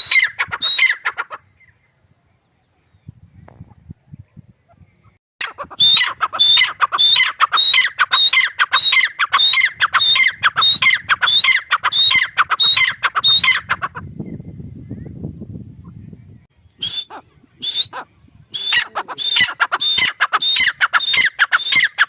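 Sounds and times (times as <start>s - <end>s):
partridge harsh repeated calls: 5.4s - 14.0s, 16.9s - 22.0s.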